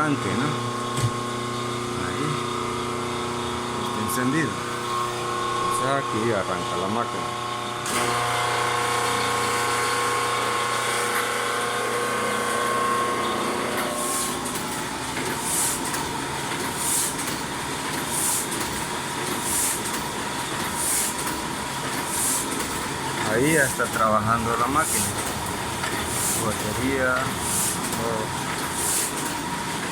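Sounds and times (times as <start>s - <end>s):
electric motor hum: 0.2s - 29.9s
printing press swishing: 11.0s - 29.9s.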